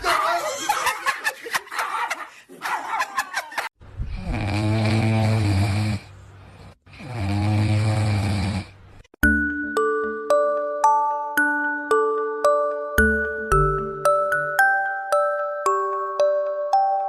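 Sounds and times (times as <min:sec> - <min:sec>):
pet snoring loudly: 0:04.1 - 0:08.8.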